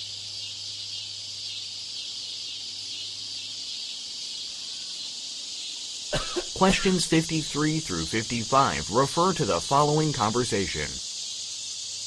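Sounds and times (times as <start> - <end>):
high-pitched hiss: 0.0 - 12.0
degraded audio playback: 6.2 - 11.0
faint low hum: 6.2 - 11.0.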